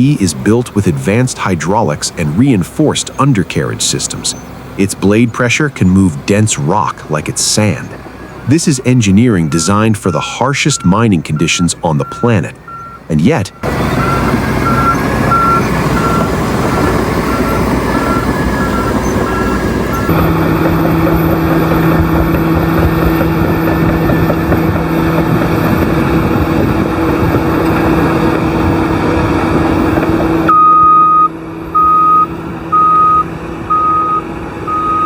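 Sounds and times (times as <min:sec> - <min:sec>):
heavy machinery engine drone: 0:00.0 - 0:35.0
reversing alarm beeping: 0:09.3 - 0:25.0, 0:30.4 - 0:35.0.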